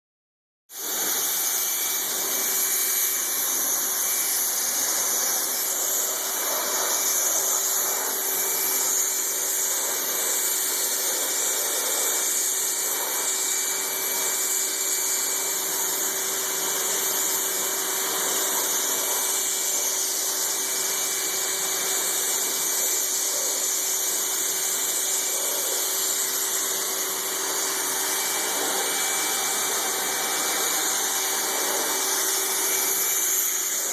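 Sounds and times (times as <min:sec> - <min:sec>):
power tool hissing and whining: 0:00.7 - 0:33.9.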